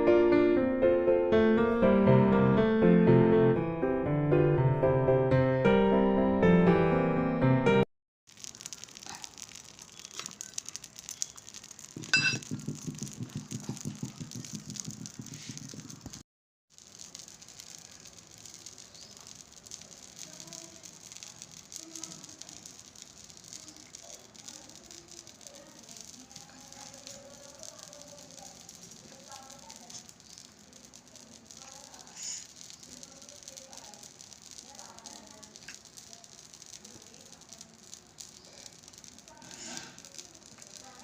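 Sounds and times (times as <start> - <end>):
faint steady crackle: 8.3 - 41.0
objects rattling and clicking: 8.3 - 41.0
ringing clink: 12.1 - 12.4.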